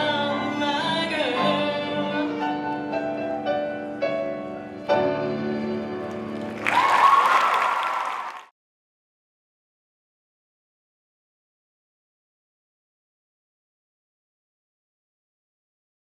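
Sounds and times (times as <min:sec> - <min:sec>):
audience applause and cheering: 0:06.1 - 0:08.5.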